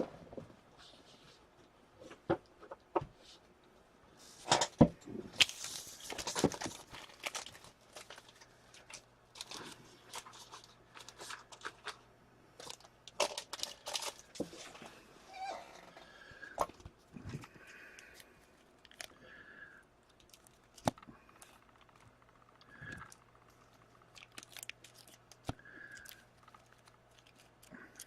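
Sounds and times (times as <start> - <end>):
wrappers crinkling and tearing: 5.4 - 12.0, 12.6 - 14.8, 18.0 - 19.2, 20.1 - 21.9, 24.1 - 28.0.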